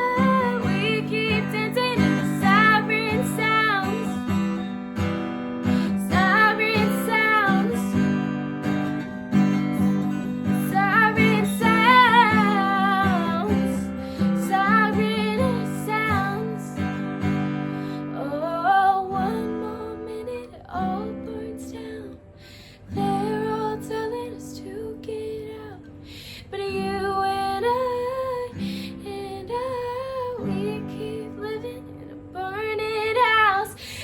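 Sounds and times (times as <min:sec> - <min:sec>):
woman singing vocal runs: 0:00.0 - 0:04.5, 0:05.8 - 0:08.1, 0:10.4 - 0:16.8, 0:22.9 - 0:34.0
strummed acoustic guitar: 0:00.0 - 0:34.0.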